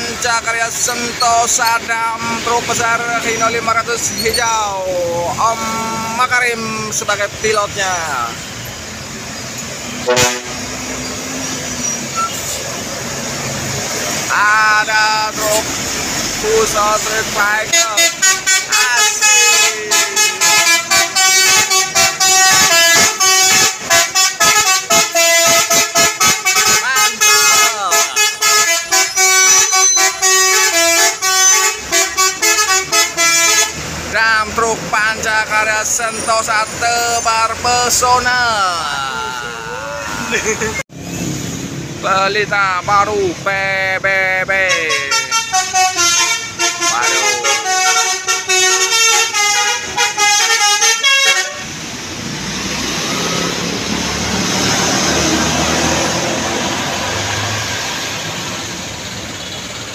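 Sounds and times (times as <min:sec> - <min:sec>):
road noise from passing vehicle: 0:00.0 - 0:59.9
multi-tone truck horn melody: 0:09.8 - 0:11.3, 0:16.8 - 0:34.0, 0:44.6 - 0:51.9.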